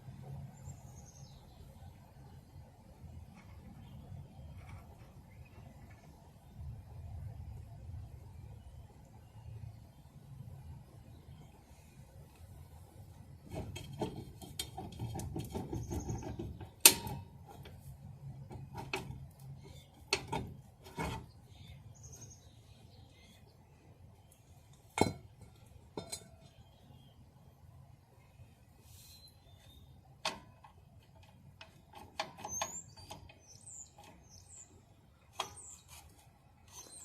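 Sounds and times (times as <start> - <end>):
rubbing and scraping: 13.4 - 21.8, 35.3 - 37.0.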